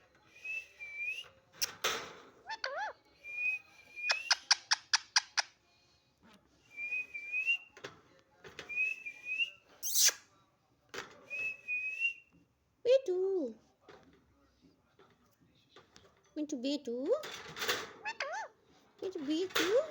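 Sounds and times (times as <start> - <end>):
parrot clicking chirps: 4.1 - 5.5.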